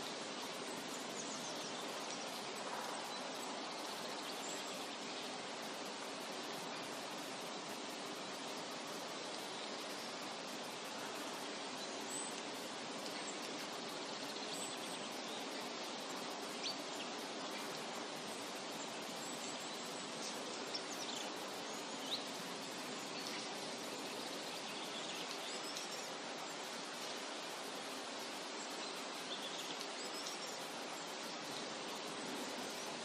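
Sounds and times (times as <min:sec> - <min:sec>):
steady background hiss: 0:00.0 - 0:33.0.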